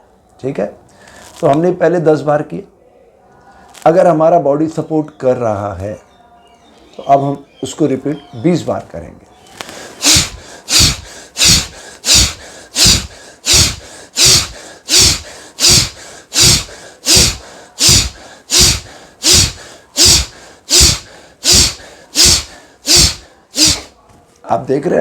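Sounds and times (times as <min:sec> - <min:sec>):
sharp nasal exhales: 0:09.6 - 0:24.0.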